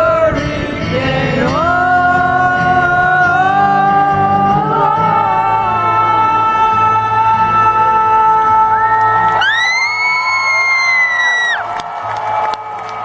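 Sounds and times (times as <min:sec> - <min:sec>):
man singing long note: 0:00.0 - 0:09.4
acoustic accompaniment: 0:00.0 - 0:11.3.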